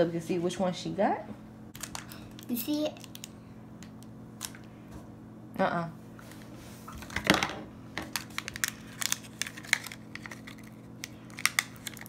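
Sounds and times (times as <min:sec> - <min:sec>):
plastic packaging rustling: 0:01.7 - 0:03.3, 0:08.0 - 0:12.0
plastic crinkles and clicks: 0:01.7 - 0:04.7, 0:08.0 - 0:12.0.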